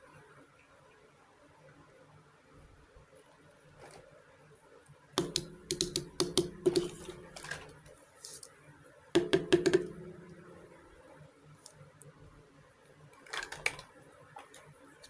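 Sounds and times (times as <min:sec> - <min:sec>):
toy kitchenware clicking and clattering: 0:05.2 - 0:07.9, 0:13.2 - 0:14.7.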